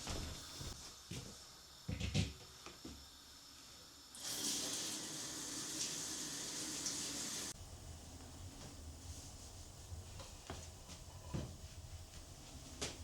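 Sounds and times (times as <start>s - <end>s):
water running from a tap: 4.2s - 7.6s.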